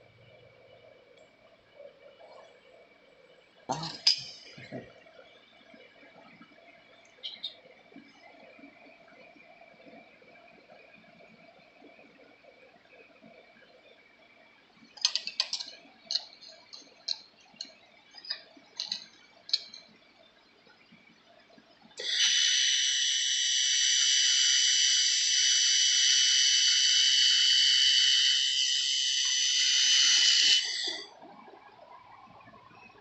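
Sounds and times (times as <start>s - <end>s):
laser welder hissing: 22.0s - 26.2s, 29.2s - 31.1s.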